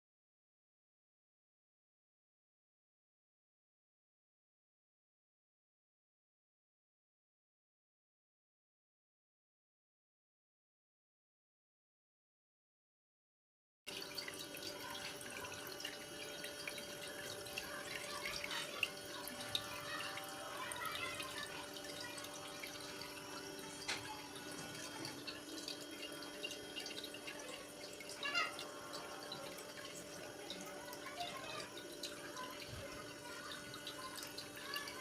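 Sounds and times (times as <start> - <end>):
water trickling and dripping: 13.9 - 35.0.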